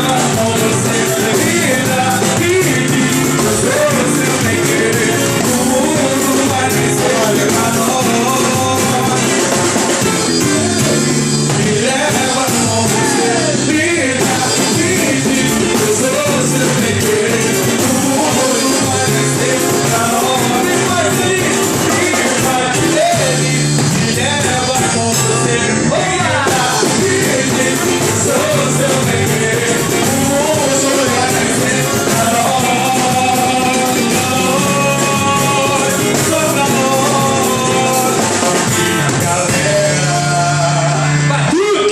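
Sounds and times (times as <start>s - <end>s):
drum kit beat: 0.0s - 41.9s
live band playing: 0.0s - 41.9s
person singing lead vocal: 0.0s - 41.9s.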